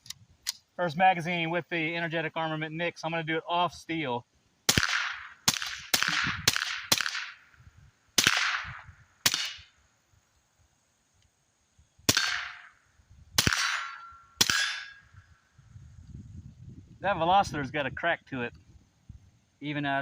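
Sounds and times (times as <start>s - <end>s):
suppressed pistol shots: 4.7s - 7.4s, 8.2s - 9.7s, 12.1s - 12.8s, 13.4s - 15.0s
steel target ringing: 13.4s - 15.1s.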